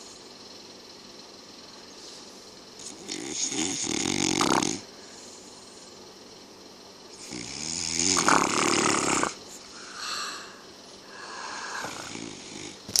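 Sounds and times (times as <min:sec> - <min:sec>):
man snoring: 0:02.8 - 0:04.9, 0:07.2 - 0:12.8
soft breaths: 0:09.6 - 0:12.2.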